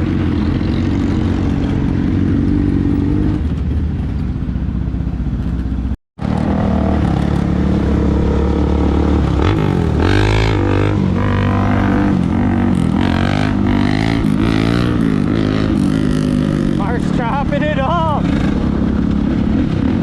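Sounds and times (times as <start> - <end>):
dirt bike engine revving: 6.2 - 20.0.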